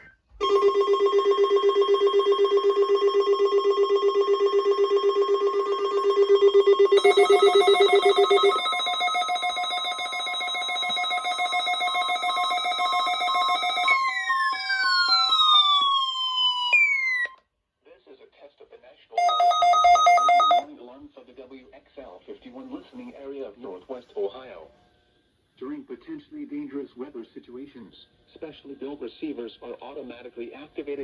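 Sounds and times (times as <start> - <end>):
pulsing electronic alarm tones: 0.4 - 17.4, 19.2 - 20.6.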